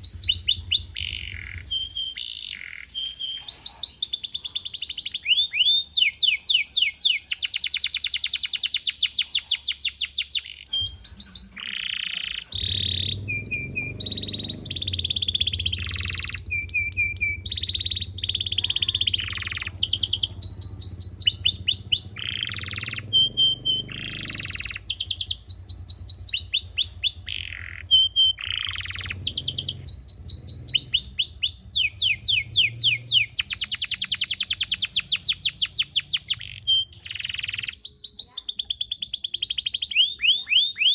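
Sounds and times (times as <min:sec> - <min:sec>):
canary singing trills: 0:00.0 - 0:40.9
low hum: 0:12.5 - 0:27.6.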